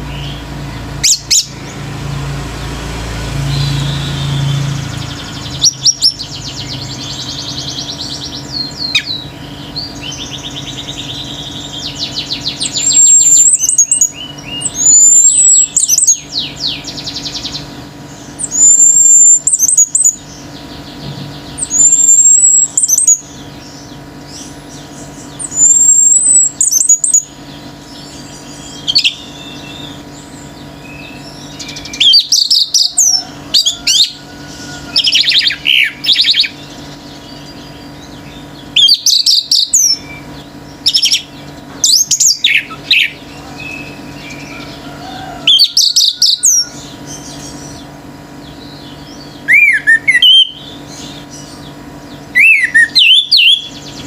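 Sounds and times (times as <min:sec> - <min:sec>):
other birds calling: 0:00.0 - 0:54.0
thrush singing whistled phrases: 0:18.4 - 0:20.2, 0:21.6 - 0:23.3, 0:25.4 - 0:27.3, 0:49.4 - 0:50.8, 0:52.3 - 0:53.7.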